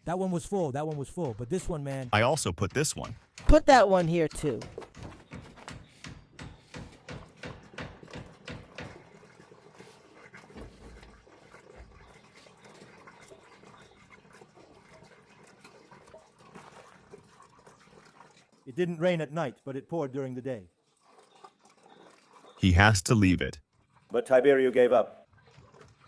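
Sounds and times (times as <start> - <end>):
liquid pouring and glugging: 7.6 - 18.8, 19.5 - 24.2, 25.2 - 26.0.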